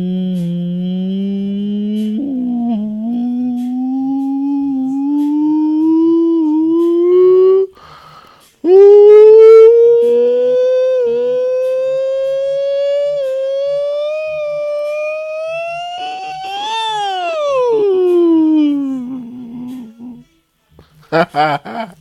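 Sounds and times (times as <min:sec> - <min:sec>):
man humming rising tones: 0:00.0 - 0:07.9, 0:08.6 - 0:20.3
man breathing: 0:07.7 - 0:08.6.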